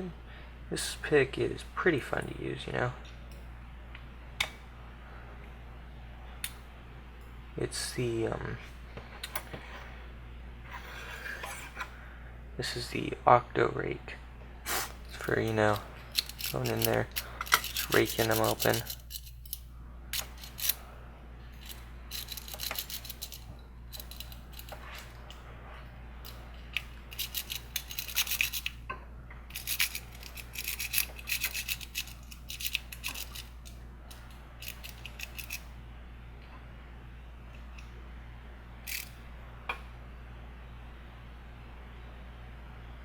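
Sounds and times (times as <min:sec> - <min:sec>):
lock pick scraping over pins: 0:15.1 - 0:19.6, 0:20.2 - 0:20.8, 0:21.6 - 0:25.2, 0:26.3 - 0:28.8, 0:29.5 - 0:35.6, 0:38.9 - 0:39.1.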